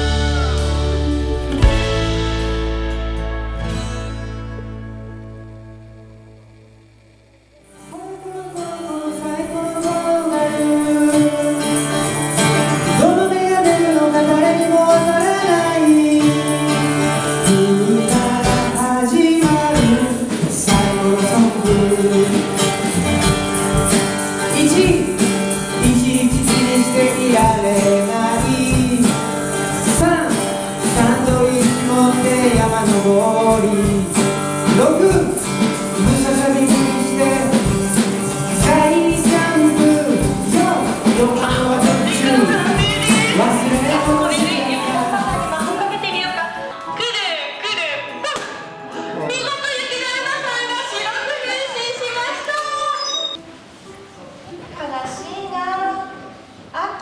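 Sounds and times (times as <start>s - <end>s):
song with singing voice: 7.8s - 23.0s, 24.0s - 49.4s.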